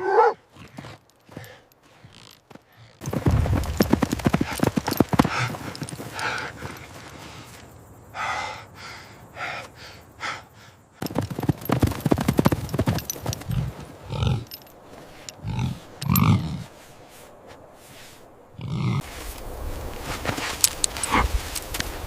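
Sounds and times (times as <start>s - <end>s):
hooves clattering: 0.5s - 7.9s, 11.0s - 18.1s, 18.7s - 22.0s
buffalo grunting: 13.0s - 16.9s, 18.6s - 19.1s.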